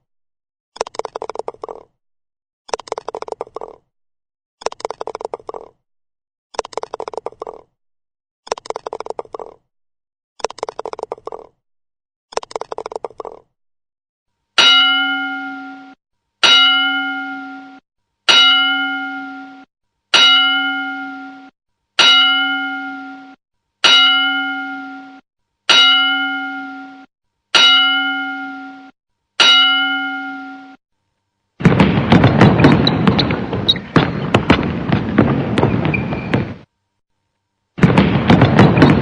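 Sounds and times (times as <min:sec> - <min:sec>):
boxing ring bell clanging: 0:14.6 - 0:30.8.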